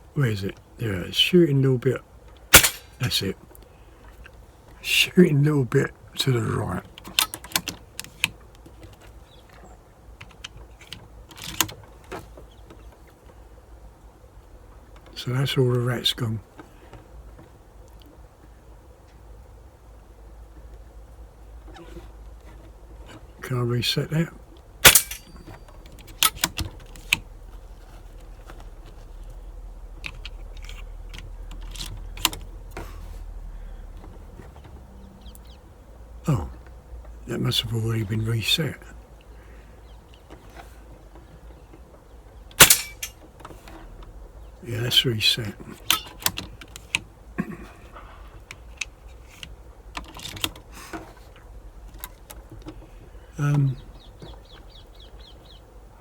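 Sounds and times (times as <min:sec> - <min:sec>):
air rifle clicks: 0:02.5 - 0:03.0, 0:24.8 - 0:27.2, 0:42.6 - 0:43.2
air rifle shot: 0:02.6 - 0:03.0, 0:24.8 - 0:25.4, 0:42.6 - 0:43.1
pellet hitting metal target: 0:02.6 - 0:03.0, 0:24.8 - 0:25.4, 0:42.6 - 0:43.1.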